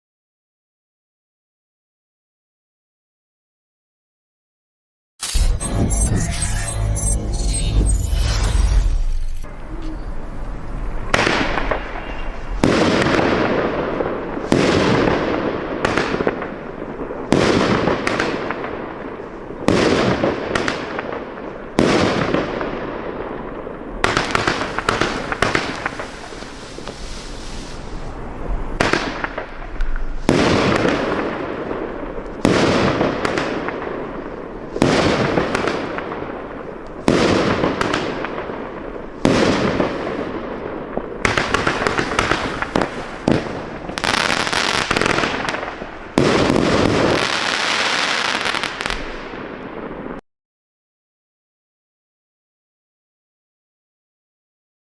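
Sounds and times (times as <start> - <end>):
fireworks bangs with hiss: 8.3 - 50.2.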